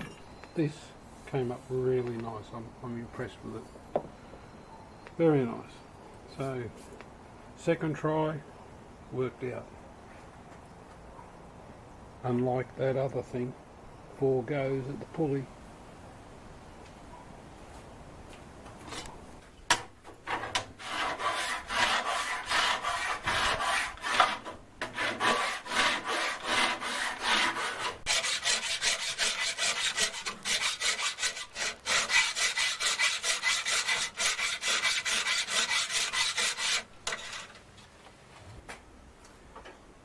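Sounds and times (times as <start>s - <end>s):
hand file rasping on metal: 20.3s - 37.5s.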